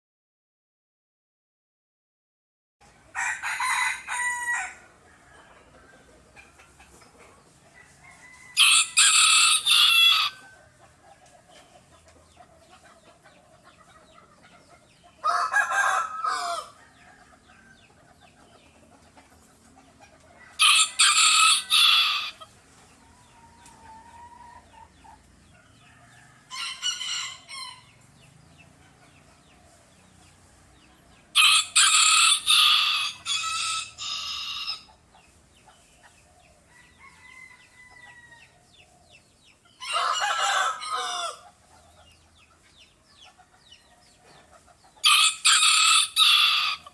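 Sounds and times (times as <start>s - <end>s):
rooster crowing: 3.1s - 5.8s, 7.7s - 10.6s, 15.2s - 17.9s, 20.4s - 22.4s, 25.7s - 28.0s, 31.3s - 34.9s, 36.7s - 38.6s, 39.8s - 41.5s, 45.0s - 46.9s.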